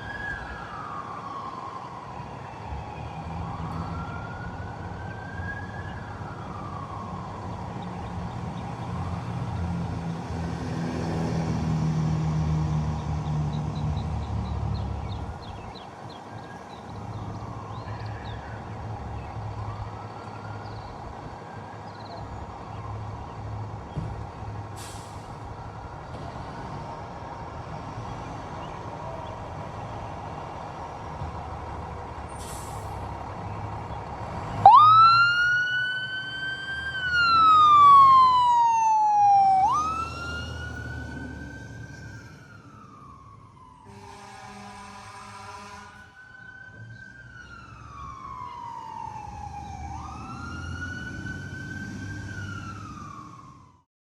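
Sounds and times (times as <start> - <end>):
fire truck siren wailing: 0.0 - 12.8, 15.0 - 23.2, 24.7 - 53.9
heavy vehicle engine rumbling: 22.1 - 35.0.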